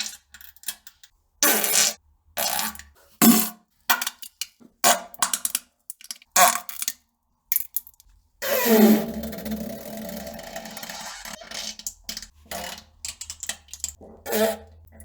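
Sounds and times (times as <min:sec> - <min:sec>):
fart sounds: 0:14.0 - 0:14.8.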